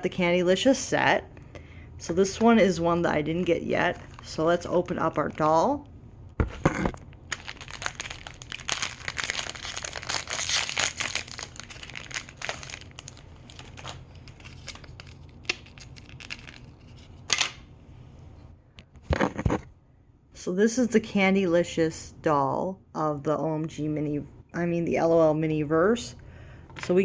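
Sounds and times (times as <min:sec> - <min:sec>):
plastic wrapping crinkling and tearing: 0:04.0 - 0:05.4, 0:07.2 - 0:17.3.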